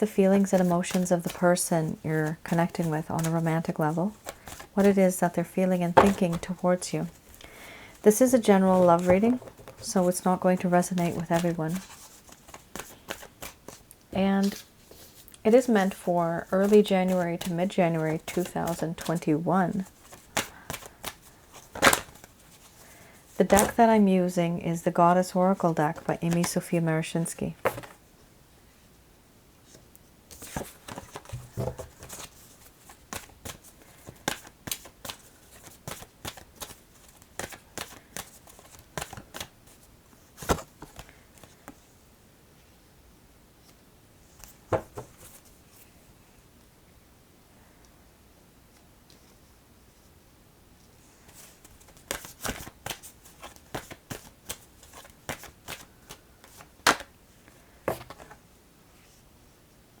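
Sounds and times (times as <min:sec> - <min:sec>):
cards shuffling: 0:00.4 - 0:05.0, 0:05.9 - 0:07.2, 0:08.2 - 0:13.8, 0:14.4 - 0:19.2, 0:19.8 - 0:22.8, 0:23.4 - 0:23.8, 0:27.6 - 0:28.0, 0:30.3 - 0:39.8, 0:51.3 - 0:57.1
card slap: 0:56.8 - 0:57.1.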